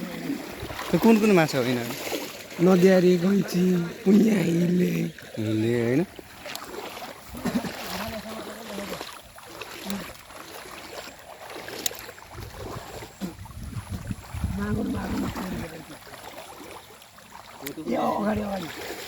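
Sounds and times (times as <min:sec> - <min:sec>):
river water splashing: 0:00.0 - 0:19.0
voices: 0:02.6 - 0:06.1, 0:17.6 - 0:18.8.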